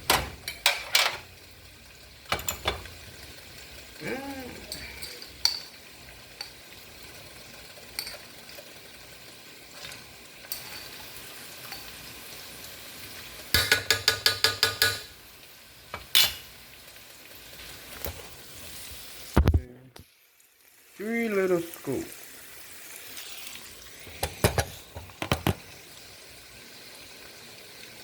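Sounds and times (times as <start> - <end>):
food sizzling in a frying pan: 0.0 - 28.0
utensil clinking against pan: 4.7 - 5.8, 13.5 - 15.1
taps on pan: 13.5 - 15.2, 24.2 - 25.6.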